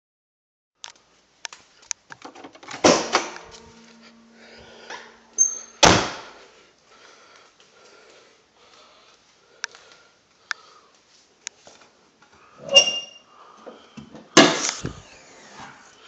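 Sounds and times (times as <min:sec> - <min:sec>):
high squeak: 0:03.1 - 0:05.9, 0:12.6 - 0:13.3
loud slams: 0:05.8 - 0:06.4.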